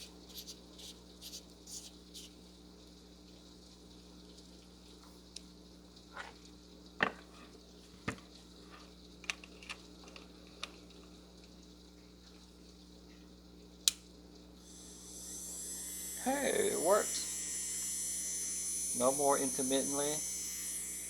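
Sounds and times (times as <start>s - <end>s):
nail drill motor whine: 14.6s - 21.0s.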